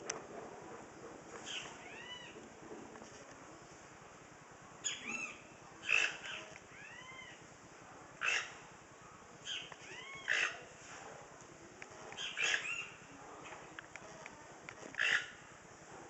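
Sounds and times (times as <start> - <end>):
toucans grunting calls: 0.0 - 2.6, 4.8 - 7.5, 8.2 - 8.8, 9.4 - 10.8, 11.8 - 15.8.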